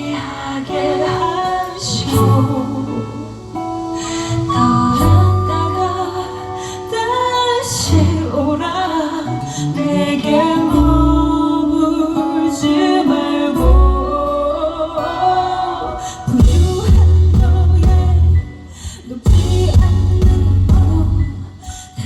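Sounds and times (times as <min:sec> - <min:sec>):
woman singing: 0:00.0 - 0:22.0
live band playing: 0:00.2 - 0:07.6, 0:16.3 - 0:21.6.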